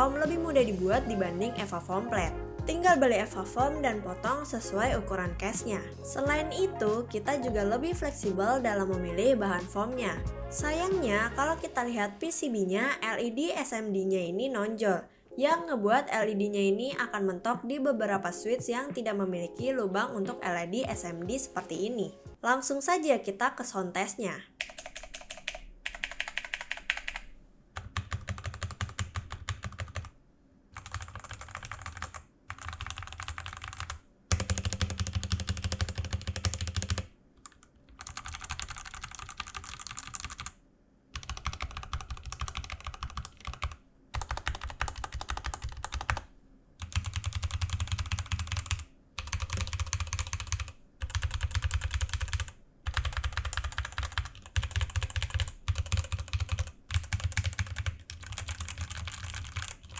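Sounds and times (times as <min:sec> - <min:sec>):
mechanical keyboard typing: 0:24.6 - 0:30.1, 0:30.8 - 0:40.6, 0:41.2 - 0:59.9.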